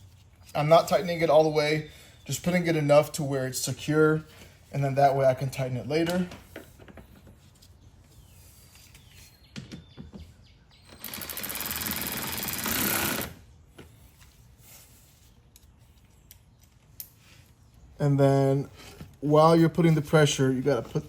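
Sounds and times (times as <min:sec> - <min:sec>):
power tool rattling: 0:10.9 - 0:13.4.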